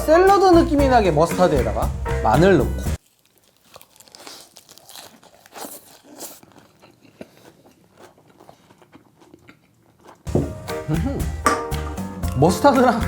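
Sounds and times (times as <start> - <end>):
person chewing crunchy food: 3.0 - 10.3.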